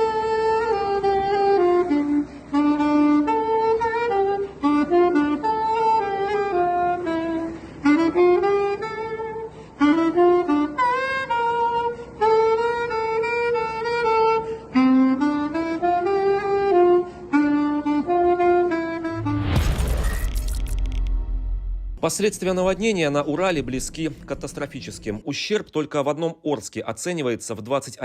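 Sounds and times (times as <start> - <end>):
saxophone playing jazz melody: 0.0 - 19.2.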